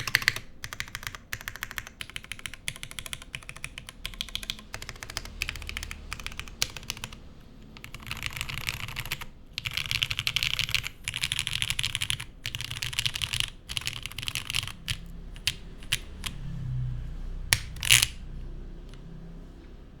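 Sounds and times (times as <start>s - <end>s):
mechanical keyboard typing: 0.0s - 16.8s, 17.5s - 18.3s.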